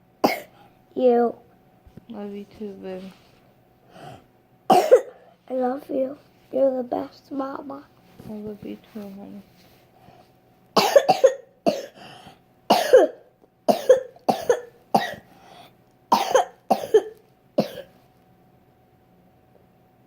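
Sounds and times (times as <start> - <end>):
person coughing: 0.2 - 0.6, 4.7 - 5.2, 10.8 - 12.1, 12.7 - 15.3, 16.1 - 18.0.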